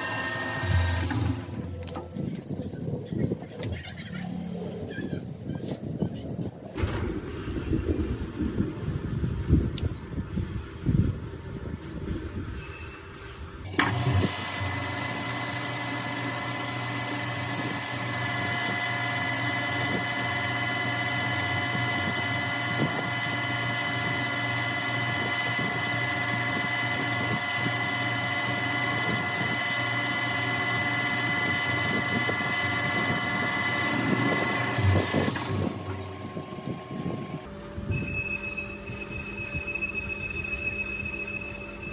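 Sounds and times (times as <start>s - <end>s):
lathe humming: 0.0s - 1.6s, 13.7s - 37.8s.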